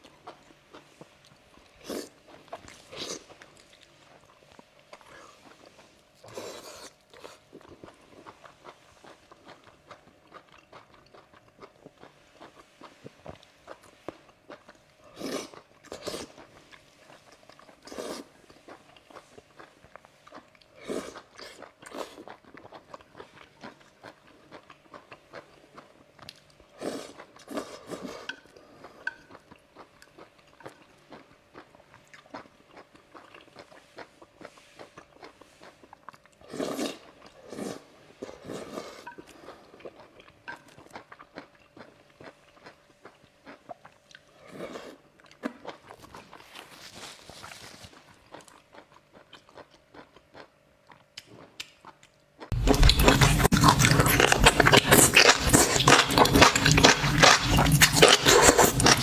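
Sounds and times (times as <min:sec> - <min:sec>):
biting and chewing seafood: 0:40.8 - 0:59.0
crunching bites: 0:52.5 - 0:59.0.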